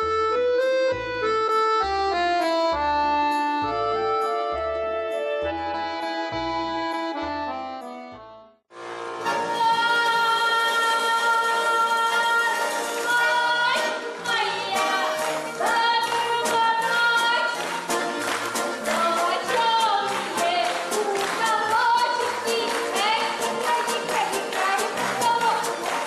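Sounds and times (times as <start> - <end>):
held instrumental chords: 0.0 - 10.7
percussion beat: 12.0 - 26.0.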